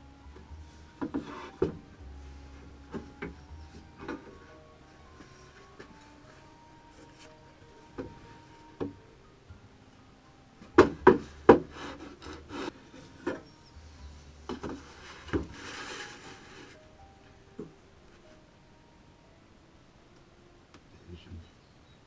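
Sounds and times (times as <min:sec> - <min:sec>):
wood rubbing: 0:00.0 - 0:09.2, 0:10.6 - 0:17.0
wooden knocks: 0:00.4 - 0:02.0, 0:10.6 - 0:13.5
soft scraping: 0:11.2 - 0:16.9.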